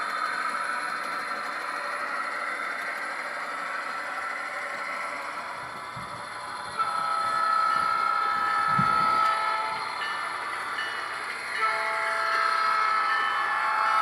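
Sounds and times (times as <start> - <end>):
model train air horn through small speaker: 6.8 - 9.8, 11.6 - 14.0.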